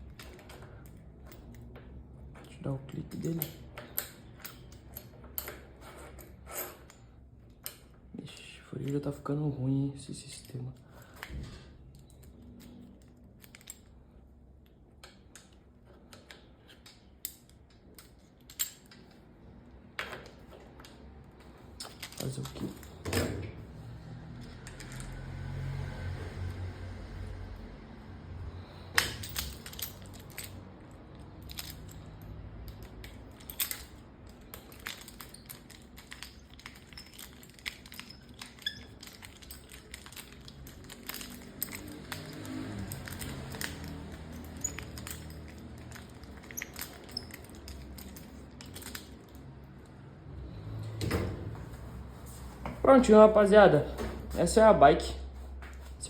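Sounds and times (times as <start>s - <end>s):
tools clicking and tapping: 31.3s - 49.4s.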